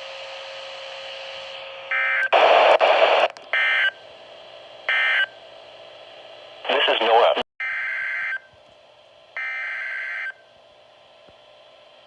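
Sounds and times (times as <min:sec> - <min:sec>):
loud static burst: 0:02.4 - 0:03.3.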